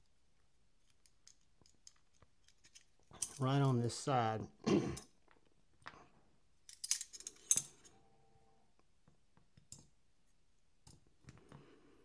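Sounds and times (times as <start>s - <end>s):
metal knife parts clicking: 6.7s - 7.9s.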